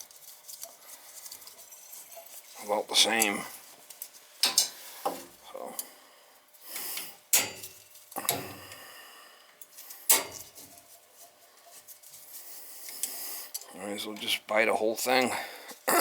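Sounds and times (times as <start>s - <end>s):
metal tools knocking and clanking: 4.4s - 5.2s.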